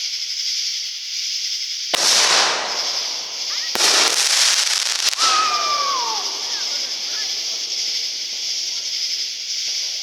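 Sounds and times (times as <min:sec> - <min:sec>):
firework crackling: 0:00.0 - 0:10.0
firework bangs: 0:01.9 - 0:10.0
falling whistle tone: 0:05.0 - 0:07.3.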